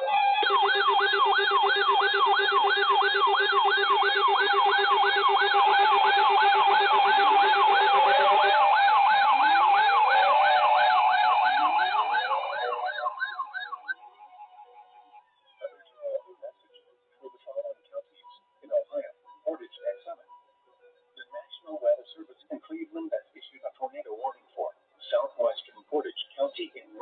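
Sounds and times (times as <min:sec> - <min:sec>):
electronic siren yelping: 0:00.0 - 0:15.8
siren wailing: 0:00.0 - 0:16.2.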